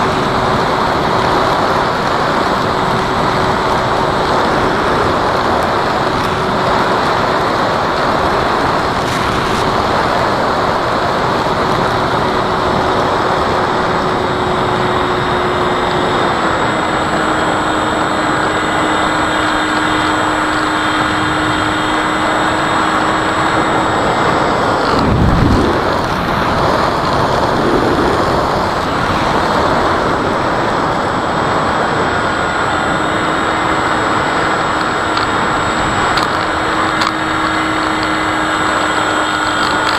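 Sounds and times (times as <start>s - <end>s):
model plane motor whine: 0.0s - 39.9s
wind noise: 0.0s - 39.9s
deep whoosh: 24.5s - 30.4s.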